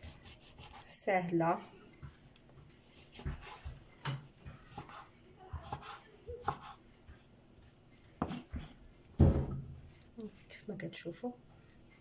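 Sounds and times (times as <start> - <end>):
knife slicing oranges: 4.7 - 6.8.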